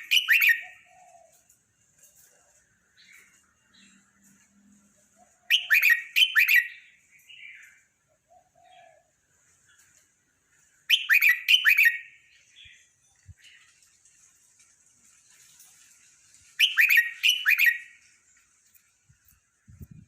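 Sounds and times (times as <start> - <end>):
bird singing: 0.0 - 10.0, 10.9 - 13.9, 16.5 - 18.4
soft bird calls: 0.0 - 14.3, 15.4 - 19.0.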